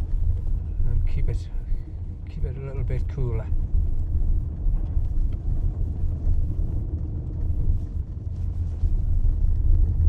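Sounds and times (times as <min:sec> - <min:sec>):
vehicle engine rumble from cab: 0:00.0 - 0:10.0.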